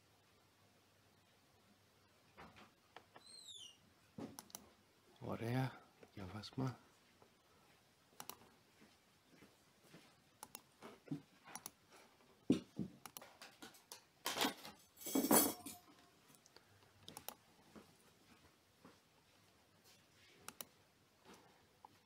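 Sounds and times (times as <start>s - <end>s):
computer mouse clicks: 4.3s - 4.7s, 8.2s - 8.5s, 10.4s - 10.7s, 11.5s - 11.8s, 13.0s - 13.3s, 16.4s - 17.4s, 20.4s - 20.8s.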